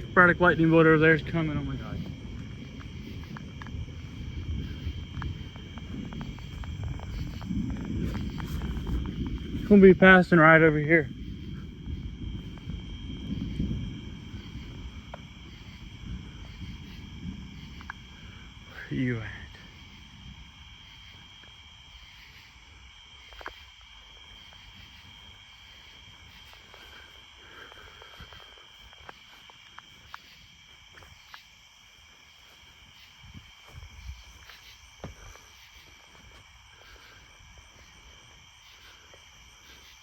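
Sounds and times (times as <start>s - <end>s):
low rumble: 0.0s - 22.3s
crickets chirping: 0.0s - 40.0s.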